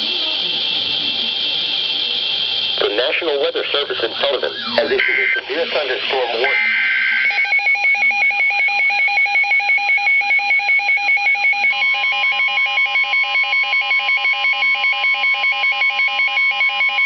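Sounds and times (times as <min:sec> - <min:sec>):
steady alarm tone: 0:00.0 - 0:17.0
rapid two-tone electronic beeps: 0:00.6 - 0:17.0.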